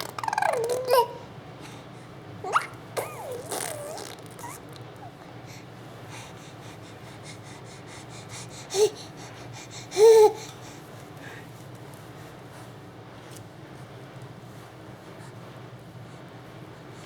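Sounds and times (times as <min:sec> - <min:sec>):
baby squealing and cooing: 0:00.0 - 0:01.3, 0:02.4 - 0:05.2.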